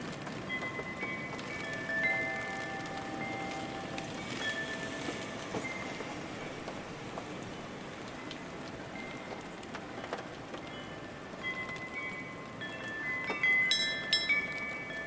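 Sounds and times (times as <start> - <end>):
rain beating against a window: 0.0 - 15.0
raindrops ticking: 0.0 - 15.0.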